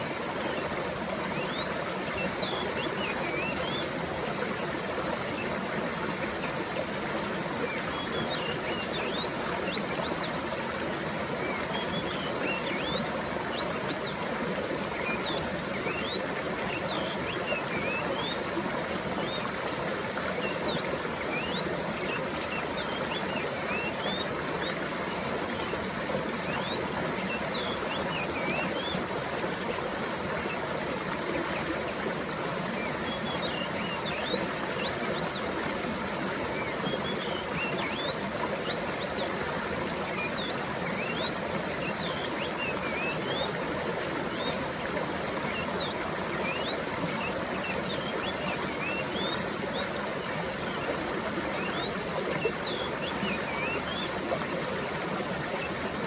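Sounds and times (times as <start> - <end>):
stream flowing: 0.0 - 56.0.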